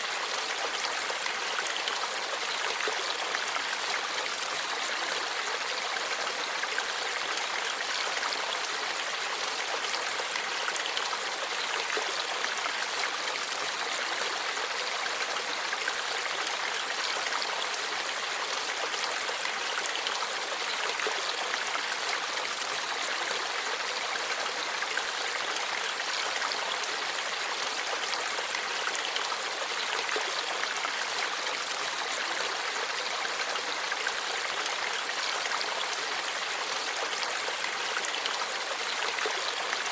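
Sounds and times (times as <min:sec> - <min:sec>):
stream babbling over rocks: 0:00.0 - 0:39.9.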